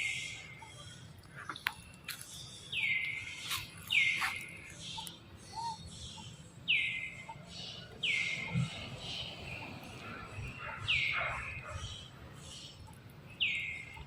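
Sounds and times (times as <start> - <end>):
high-pitched animal calls: 5.0 - 6.4.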